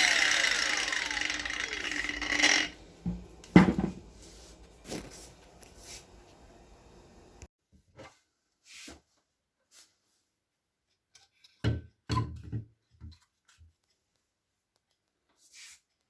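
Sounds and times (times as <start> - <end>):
handling rustles: 3.9 - 6.1.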